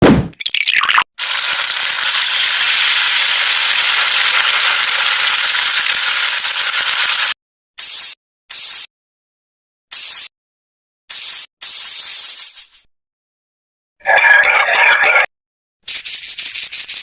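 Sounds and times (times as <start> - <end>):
hot oil sizzling in pan: 1.2 - 7.4.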